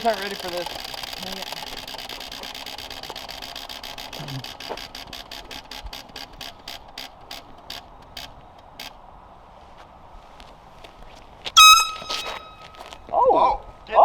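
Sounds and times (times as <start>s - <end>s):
prize wheel ticking: 0.0s - 7.8s.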